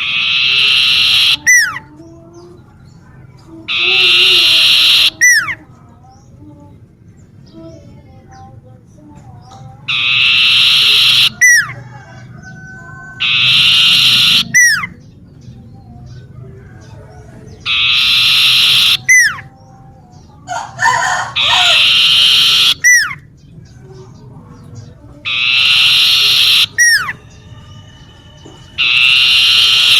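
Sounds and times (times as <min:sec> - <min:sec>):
bird calling buzzy trill: 0:00.0 - 0:01.8, 0:03.7 - 0:05.6, 0:09.9 - 0:15.0, 0:17.6 - 0:19.5, 0:20.5 - 0:23.3, 0:25.3 - 0:27.5, 0:28.1 - 0:29.9
soft bird chirps: 0:07.3 - 0:29.9.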